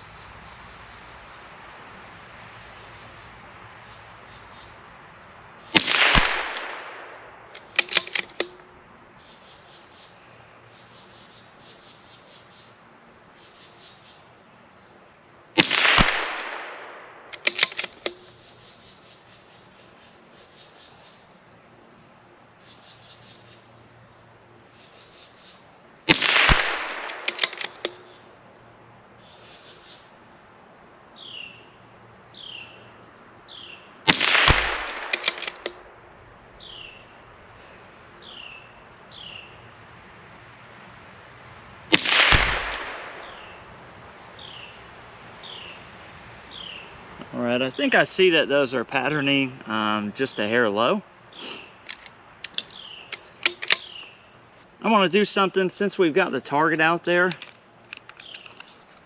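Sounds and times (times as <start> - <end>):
insects buzzing and chirping: 0.0 - 59.0
rifle shots: 5.7 - 8.5, 15.6 - 18.1, 26.1 - 28.0, 34.1 - 35.9, 41.9 - 43.6
rifle bolt clicks: 5.8 - 8.6, 17.3 - 18.2, 26.1 - 28.1, 34.1 - 35.8, 51.8 - 53.9, 57.3 - 58.8.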